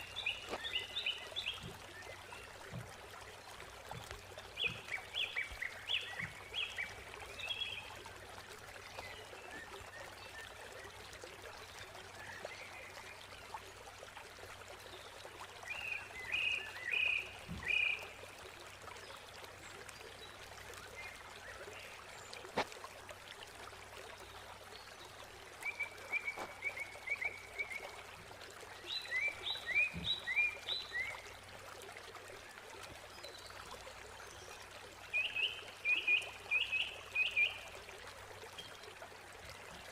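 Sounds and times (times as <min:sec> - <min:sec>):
small birds chirping: 0:03.9 - 0:08.0.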